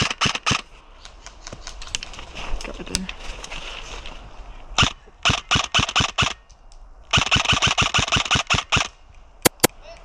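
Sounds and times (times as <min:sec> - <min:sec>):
airsoft rifle shots: 0:00.0 - 0:00.6, 0:04.8 - 0:06.4, 0:07.1 - 0:09.7.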